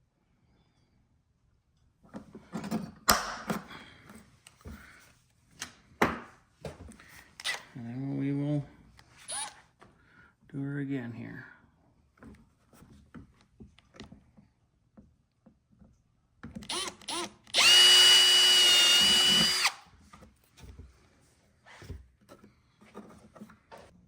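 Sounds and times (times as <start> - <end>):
power drill whining: 7.4 - 7.7, 9.2 - 9.6, 16.6 - 19.9.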